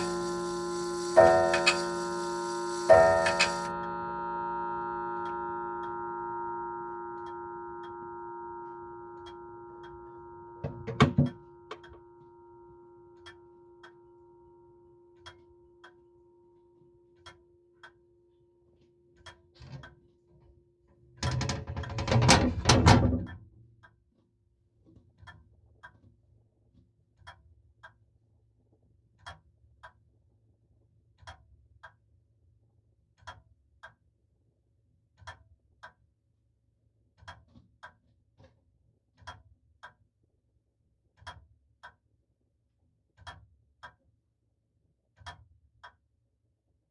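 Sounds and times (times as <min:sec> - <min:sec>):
grandfather clock ticking: 0:00.0 - 0:14.1
clock strike ringing: 0:00.0 - 0:16.2.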